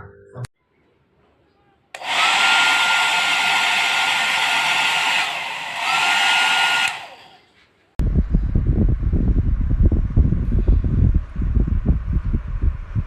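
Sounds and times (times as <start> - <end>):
hair dryer running: 2.0 - 7.4.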